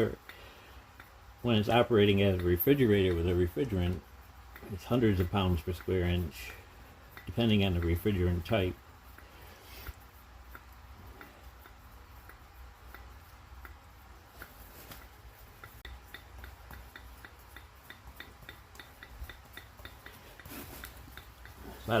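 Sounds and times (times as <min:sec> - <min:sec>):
compressor piston ticking: 0:00.0 - 0:22.0.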